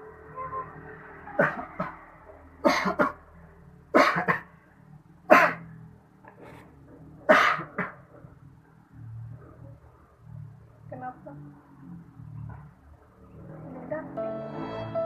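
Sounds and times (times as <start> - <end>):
person coughing: 1.4 - 2.0, 2.6 - 3.2, 4.0 - 4.5, 7.3 - 8.0.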